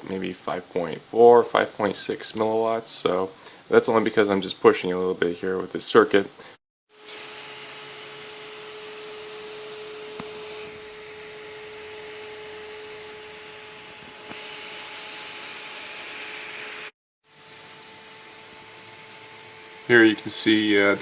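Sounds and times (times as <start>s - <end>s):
cooling fan whirring: 7.0s - 21.0s.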